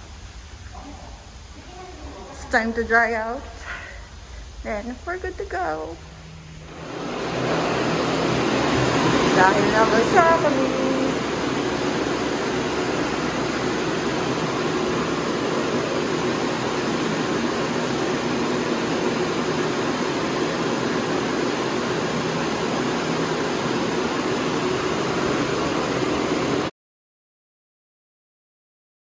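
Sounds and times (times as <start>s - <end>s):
air dryer blowing: 0.0s - 26.7s
faint hum: 0.0s - 26.7s.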